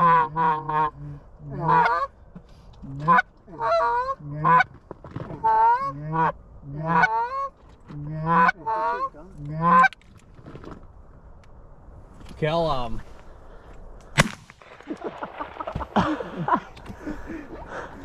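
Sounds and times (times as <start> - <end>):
goose honking: 0.0 - 2.1, 2.9 - 4.7, 5.3 - 10.0.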